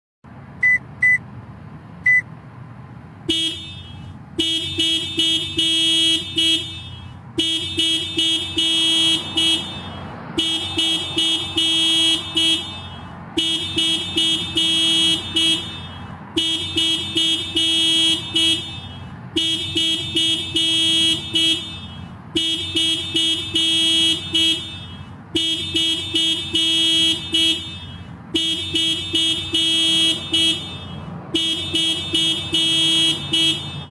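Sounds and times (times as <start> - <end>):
short high beep: 0.6 - 1.2
car alarm honking: 3.3 - 33.9.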